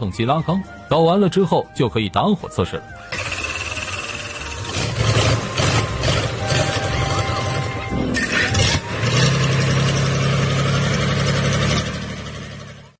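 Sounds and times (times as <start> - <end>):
diesel engine starting and idling: 2.9 - 12.9.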